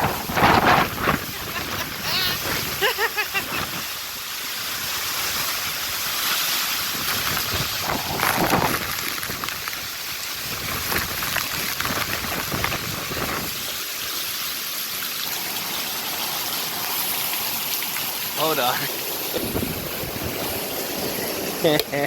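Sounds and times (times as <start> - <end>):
wind buffeting microphone: 0.0 - 3.9, 6.9 - 9.7, 10.4 - 13.7, 19.3 - 21.6
hurricane wind rushing: 0.0 - 13.7, 18.4 - 21.9
rain falling: 0.0 - 22.0.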